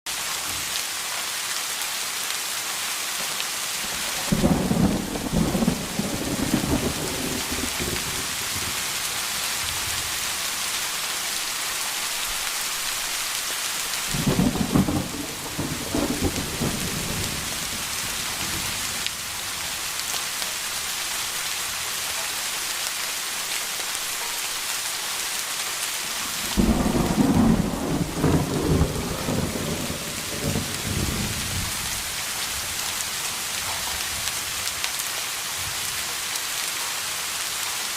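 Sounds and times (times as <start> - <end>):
steady rain falling: 0.1 - 37.9
thunder rumbling: 4.0 - 10.1, 14.1 - 19.1, 26.3 - 32.1.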